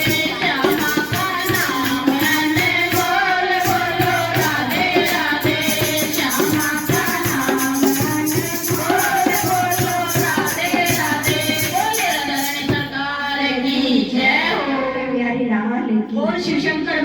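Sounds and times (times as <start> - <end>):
jingling hand percussion: 0.0 - 13.4
person singing devotional song: 0.0 - 17.0.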